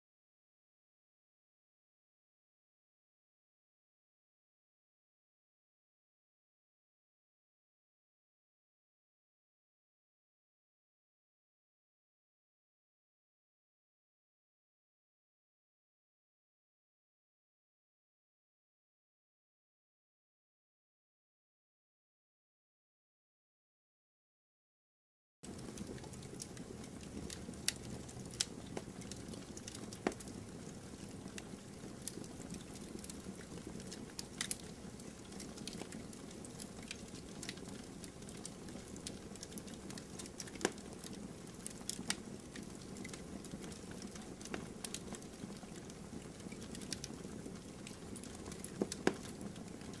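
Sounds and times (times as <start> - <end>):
wood fire crackling: 25.4 - 50.0.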